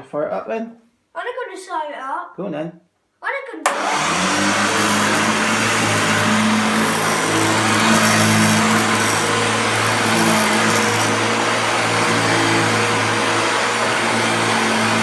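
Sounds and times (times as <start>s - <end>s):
upright vacuum cleaner running: 3.7s - 15.0s.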